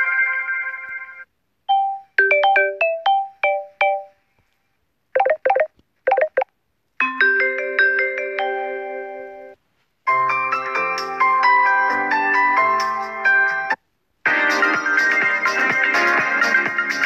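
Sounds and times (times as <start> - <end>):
phone ringtone chords: 1.7 - 4.2, 5.2 - 6.4.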